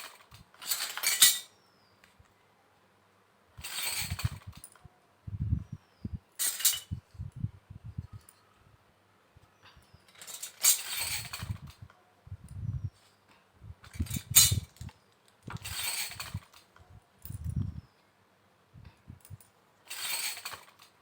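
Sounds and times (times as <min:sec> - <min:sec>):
plastic toy pieces clinking: 0:00.0 - 0:01.5.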